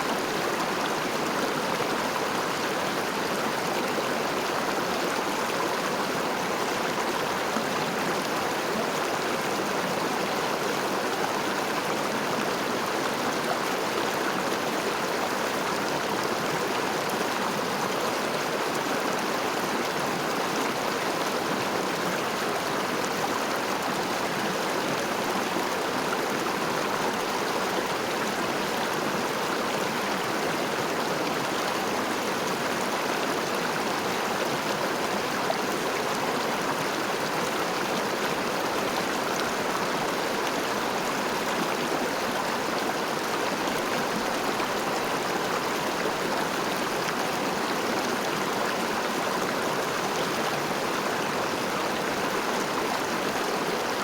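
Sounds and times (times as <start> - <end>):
river water flowing over stones: 0.0 - 54.0.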